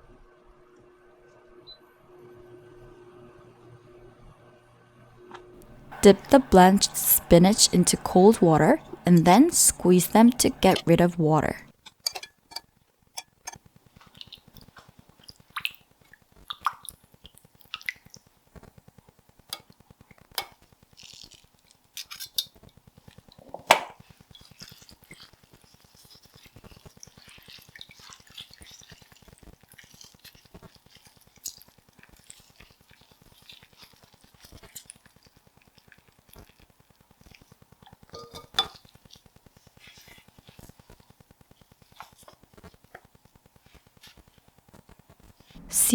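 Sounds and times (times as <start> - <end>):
bowls and utensils clinking: 5.6 - 12.3, 38.2 - 38.8.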